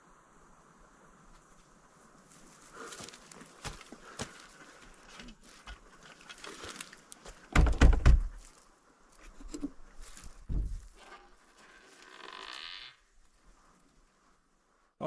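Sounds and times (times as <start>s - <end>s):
loud thuds: 10.4s - 10.9s.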